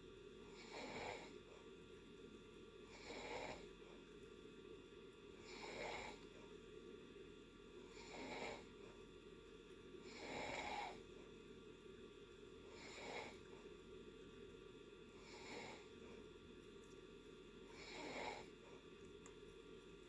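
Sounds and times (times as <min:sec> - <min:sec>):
faint snoring: 0:00.4 - 0:01.7, 0:02.8 - 0:04.0, 0:05.4 - 0:06.5, 0:07.8 - 0:09.0, 0:10.0 - 0:11.2, 0:12.6 - 0:13.7, 0:15.1 - 0:16.3, 0:17.6 - 0:18.9.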